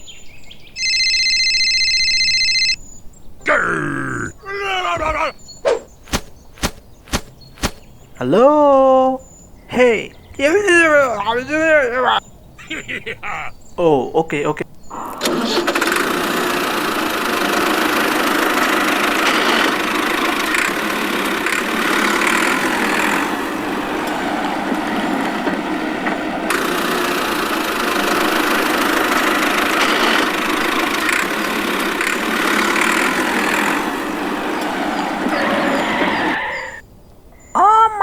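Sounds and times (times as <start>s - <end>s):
small motor running: 15.0s - 36.4s.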